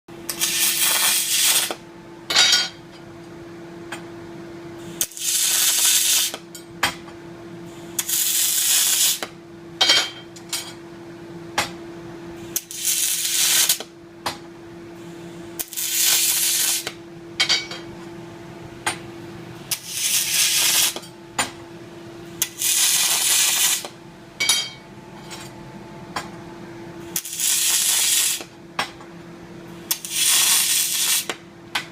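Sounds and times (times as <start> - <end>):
steady hum: 0.1 - 31.9
welding arc hissing and crackling: 0.2 - 1.8, 4.9 - 6.4, 7.8 - 9.3, 12.4 - 13.9, 15.5 - 17.0, 19.6 - 21.1, 22.4 - 24.0, 27.1 - 28.5, 29.8 - 31.4.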